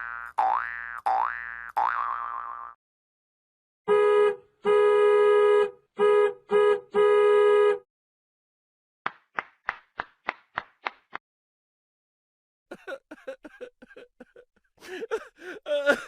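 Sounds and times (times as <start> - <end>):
buzzy horn-like tone: 3.9 - 7.8.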